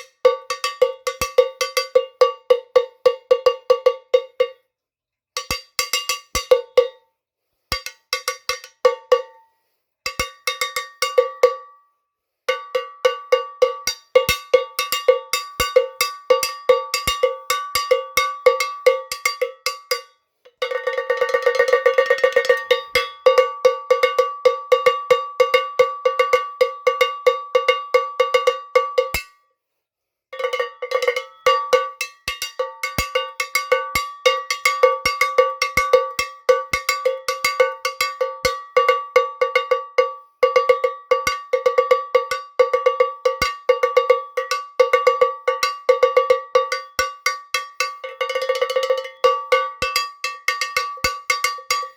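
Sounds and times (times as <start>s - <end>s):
cowbell struck with a stick: 0.0s - 4.6s, 5.4s - 7.0s, 7.7s - 9.4s, 10.1s - 11.8s, 12.5s - 29.4s, 30.4s - 51.9s.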